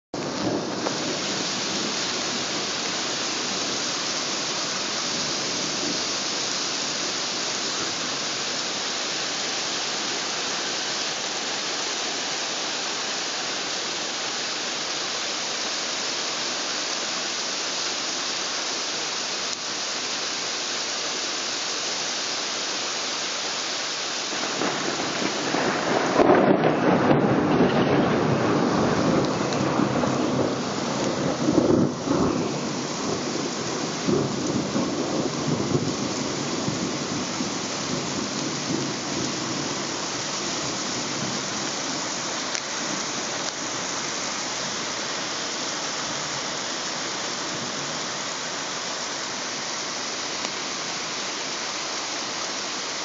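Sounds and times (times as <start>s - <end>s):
heavy rain pouring: 0.0s - 53.0s
thunder rumbling: 0.2s - 8.4s, 24.3s - 43.9s.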